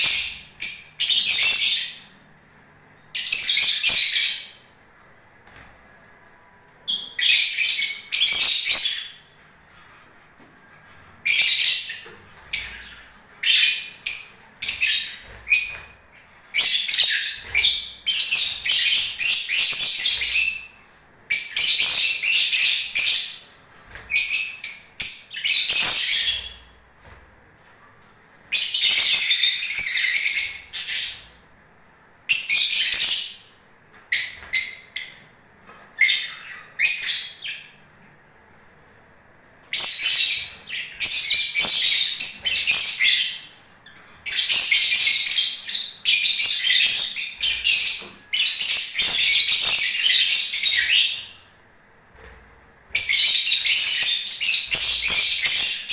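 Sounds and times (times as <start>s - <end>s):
lovebirds chattering: 11.2s - 20.7s.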